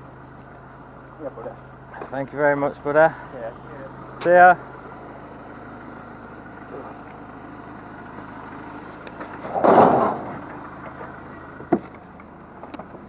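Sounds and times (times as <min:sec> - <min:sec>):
vehicle engine idling: 0:00.0 - 0:13.0
loud short clattering burst: 0:09.5 - 0:10.4.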